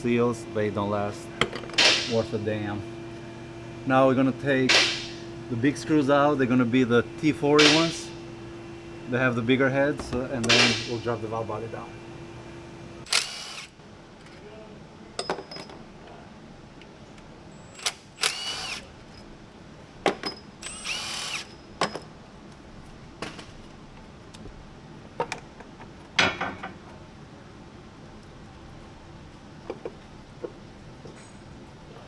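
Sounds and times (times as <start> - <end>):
power driver spinning: 0.4 - 13.7, 17.7 - 19.0, 20.6 - 21.6
tool and metal clicks: 13.0 - 13.7.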